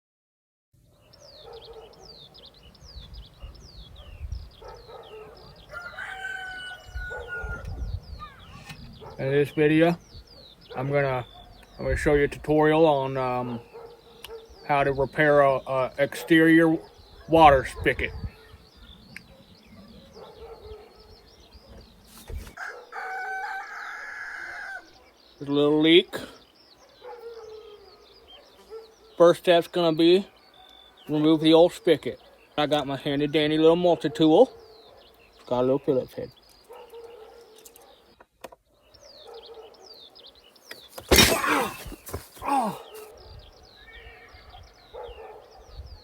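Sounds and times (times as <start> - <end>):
small birds chirping: 0.8 - 46.0
rooster crowing: 5.6 - 7.7, 22.6 - 24.9.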